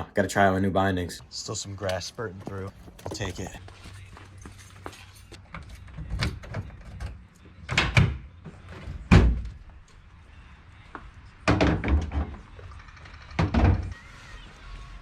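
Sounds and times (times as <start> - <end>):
knocks and thumps: 11.4 - 12.4.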